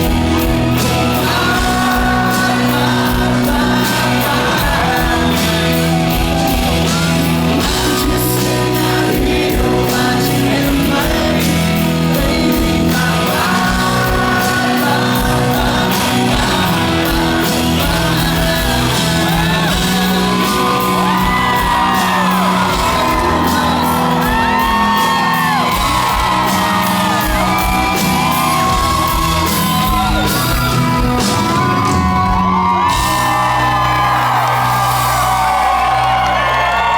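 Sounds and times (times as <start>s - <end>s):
country band with singing: 0.0s - 36.9s
crowd shouting and whooping: 0.0s - 36.9s.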